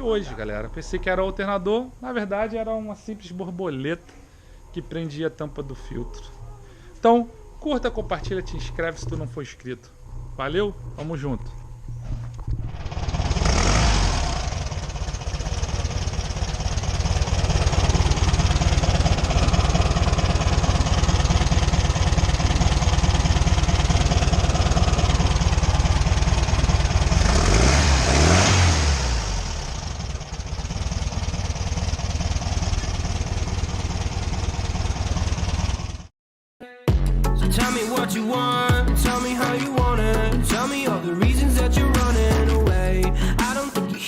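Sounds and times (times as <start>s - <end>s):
car engine idling and revving: 4.0s - 36.1s.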